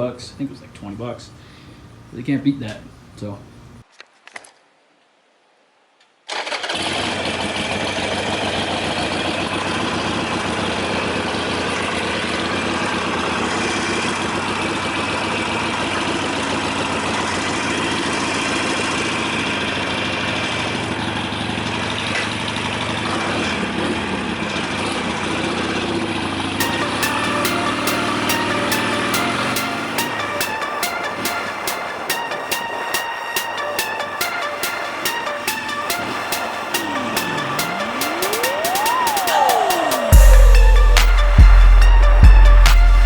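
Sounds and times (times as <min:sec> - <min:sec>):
motorcycle engine idling: 0:26.6 - 0:30.4.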